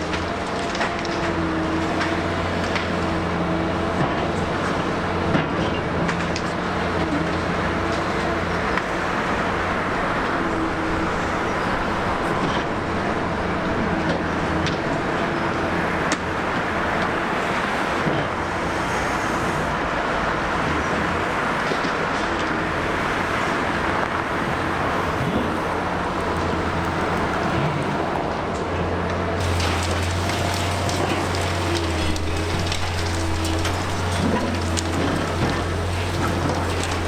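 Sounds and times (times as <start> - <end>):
excavator diesel engine running: 0.0 - 37.0
sharp cracks and clicks: 28.5 - 37.0.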